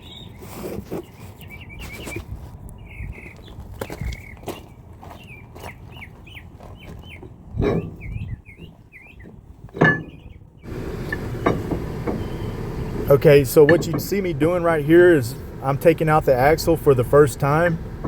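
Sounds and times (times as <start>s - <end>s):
small birds chirping: 0.0s - 15.8s
steady background hum: 7.6s - 18.0s
hammer knocking on metal: 9.8s - 13.0s.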